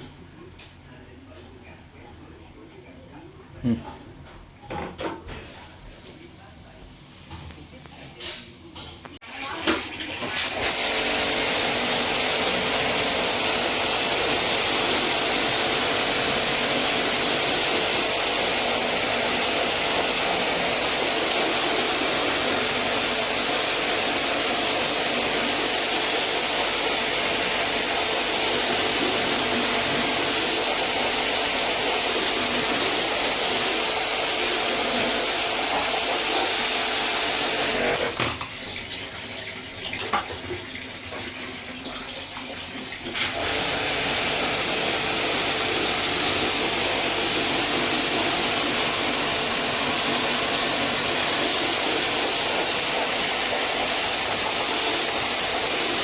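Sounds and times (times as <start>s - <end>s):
pressure washer spraying water: 10.4s - 38.2s, 43.2s - 56.0s.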